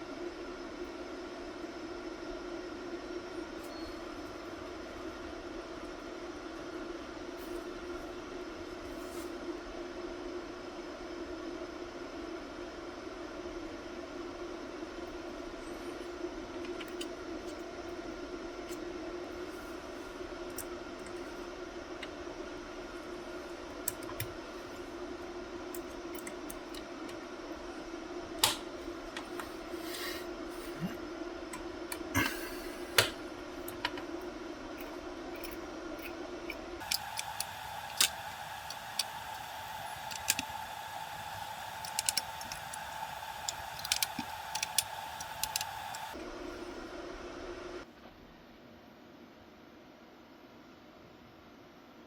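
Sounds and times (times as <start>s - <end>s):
steady hum: 12.4s - 47.9s
sharp clicks and taps: 36.8s - 46.2s.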